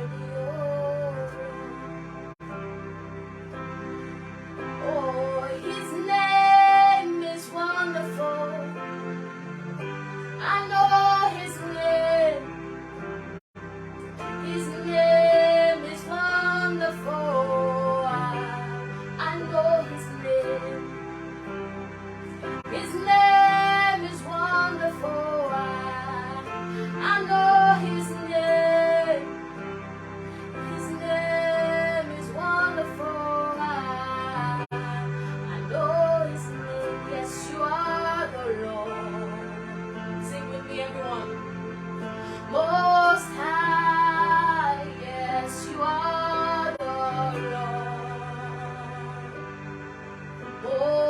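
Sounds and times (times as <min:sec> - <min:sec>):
woman singing: 0:00.0 - 0:01.8, 0:04.8 - 0:08.8, 0:10.4 - 0:12.5, 0:14.3 - 0:20.9, 0:22.7 - 0:29.3, 0:30.5 - 0:41.3, 0:42.3 - 0:49.4, 0:50.6 - 0:51.0
sustained instrumental backing: 0:00.0 - 0:51.0.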